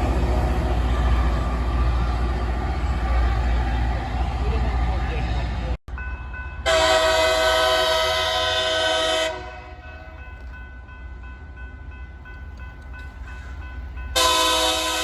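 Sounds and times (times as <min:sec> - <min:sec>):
train air horn blasts: 0:06.6 - 0:09.8, 0:14.2 - 0:15.0.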